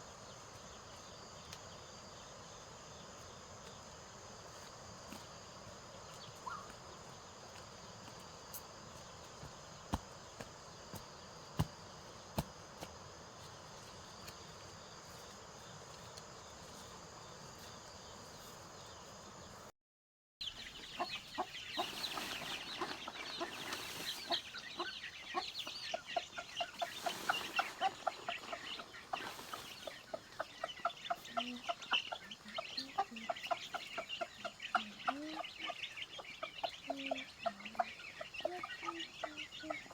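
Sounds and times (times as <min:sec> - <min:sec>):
insects chirring: 0:00.0 - 0:19.7, 0:20.5 - 0:39.9
chickens clucking: 0:06.1 - 0:07.2, 0:20.4 - 0:39.9.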